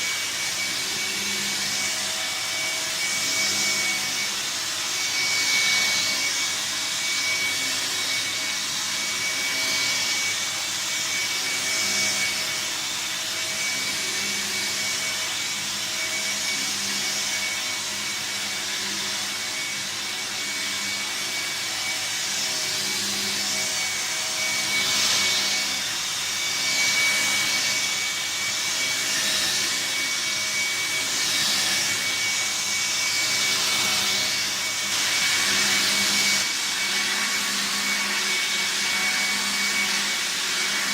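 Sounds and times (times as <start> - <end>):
vacuum cleaner whining: 0.0 - 40.9.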